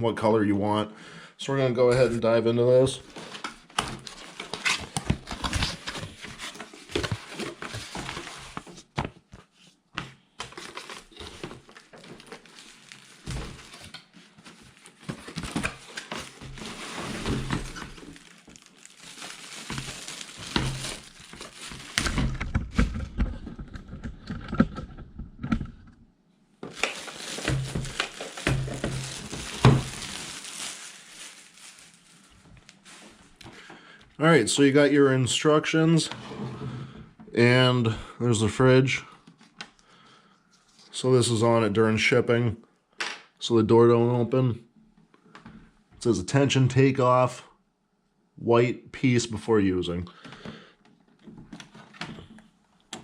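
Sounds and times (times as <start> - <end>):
paper and plastic wrap crinkling: 2.9 - 9.1, 10.4 - 24.4, 26.6 - 33.7.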